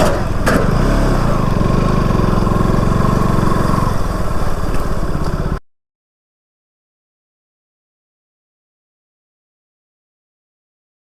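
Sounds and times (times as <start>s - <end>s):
motorcycle engine idling: 0.0s - 5.6s.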